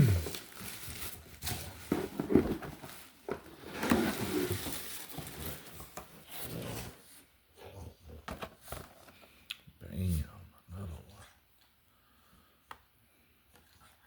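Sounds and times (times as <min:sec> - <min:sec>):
packaging rustling: 0:00.1 - 0:06.2.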